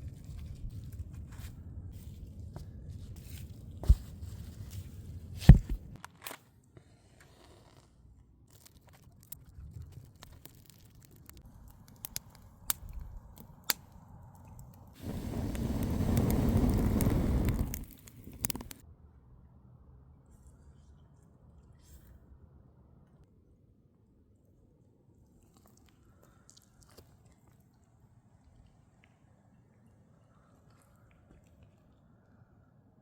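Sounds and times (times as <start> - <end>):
wood fire crackling and popping: 9.2 - 13.8, 14.6 - 18.8.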